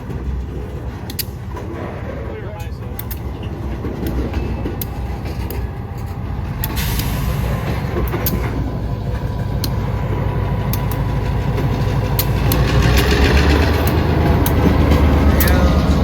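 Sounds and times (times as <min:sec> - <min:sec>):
locomotive engine rumbling: 0:00.0 - 0:16.0
sharp clicks: 0:02.9 - 0:03.3, 0:10.6 - 0:15.8.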